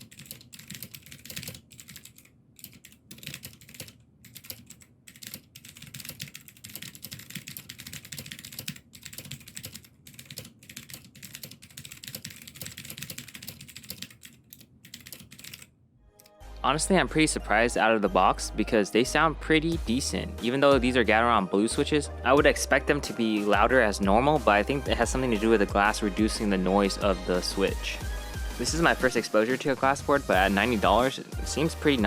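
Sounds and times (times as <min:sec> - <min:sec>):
mechanical keyboard typing: 0:00.0 - 0:15.7.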